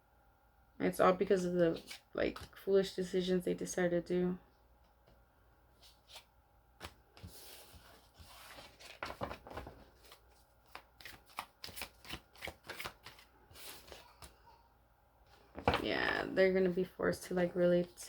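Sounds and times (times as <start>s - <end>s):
cards shuffling and flicking: 8.3s - 14.4s.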